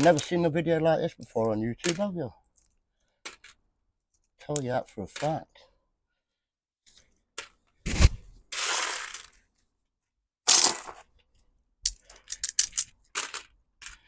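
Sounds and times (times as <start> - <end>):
coins rattling in a pile: 8.5 - 9.4, 10.5 - 11.0, 11.9 - 14.0
coins clacking onto magnet: 11.9 - 14.0.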